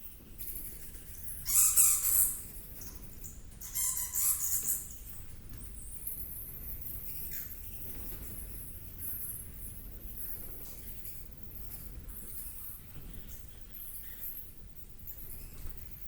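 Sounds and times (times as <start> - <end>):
harsh screeching bird calls: 1.4 - 2.4, 3.6 - 4.9.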